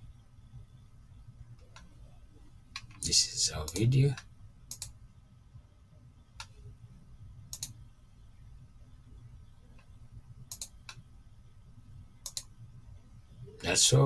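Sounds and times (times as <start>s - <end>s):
faint low hum: 0.0s - 14.0s
computer mouse clicks: 3.7s - 5.0s, 7.5s - 7.8s, 9.7s - 11.0s, 12.2s - 12.6s.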